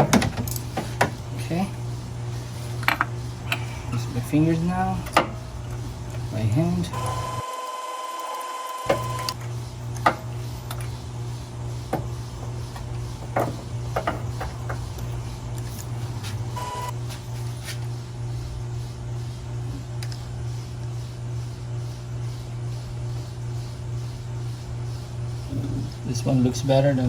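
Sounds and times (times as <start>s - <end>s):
beep tone: 16.6s - 16.9s.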